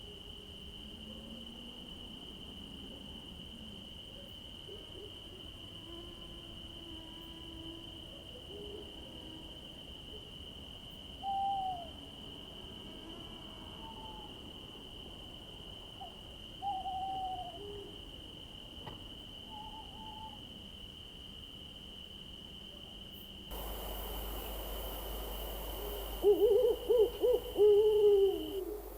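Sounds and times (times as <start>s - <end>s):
insects trilling: 0.0s - 28.9s
faint animal calls: 13.6s - 14.5s, 16.0s - 18.0s, 19.4s - 20.5s, 23.5s - 28.9s.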